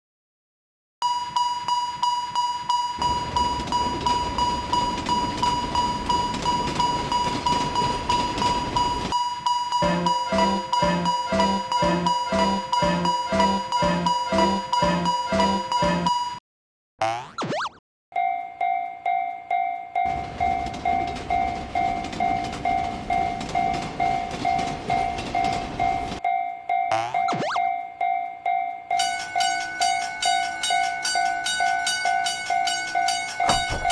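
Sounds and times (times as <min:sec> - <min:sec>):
railroad crossing bell ringing: 0:01.0 - 0:16.4, 0:18.1 - 0:33.9
passing train rumble: 0:03.0 - 0:09.1, 0:20.0 - 0:26.2
train rushing past: 0:09.8 - 0:16.1.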